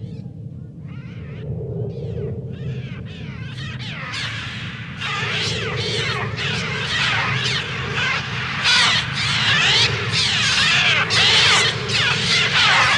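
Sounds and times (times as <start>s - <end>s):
seagulls screeching: 3.6s - 12.9s.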